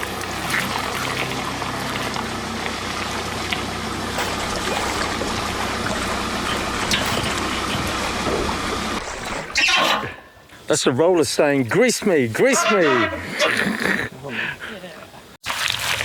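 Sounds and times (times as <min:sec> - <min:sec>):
low motor hum: 0:00.0 - 0:10.5
water trickling and splashing: 0:00.0 - 0:10.7, 0:15.4 - 0:16.0.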